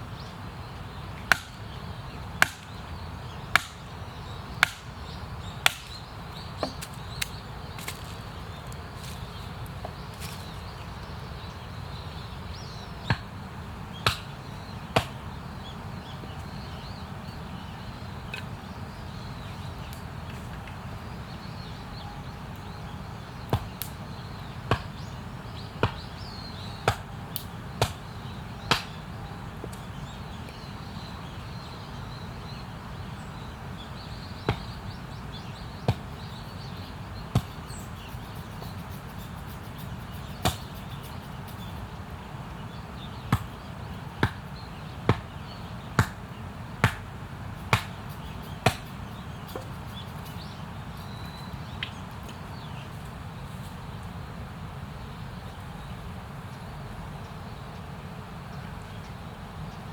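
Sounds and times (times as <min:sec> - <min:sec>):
axe chopping firewood: 0:01.3 - 0:01.6, 0:02.4 - 0:02.7, 0:03.5 - 0:03.8, 0:04.6 - 0:04.9, 0:05.6 - 0:06.0, 0:06.6 - 0:08.2, 0:14.0 - 0:14.3, 0:47.7 - 0:48.0, 0:48.6 - 0:48.9.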